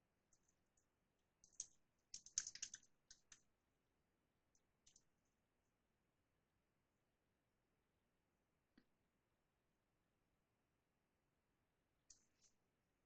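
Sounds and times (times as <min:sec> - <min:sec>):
keyboard typing: 0:01.4 - 0:03.4.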